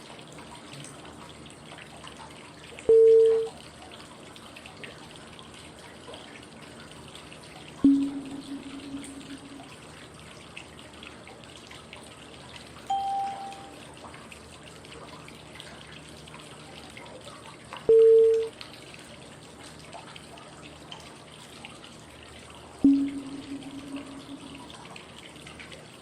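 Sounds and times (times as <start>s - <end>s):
flowing water: 0.0s - 26.0s
short clean cue tones: 2.9s - 3.5s, 7.8s - 9.8s, 12.9s - 13.8s, 17.9s - 18.5s, 22.8s - 24.8s.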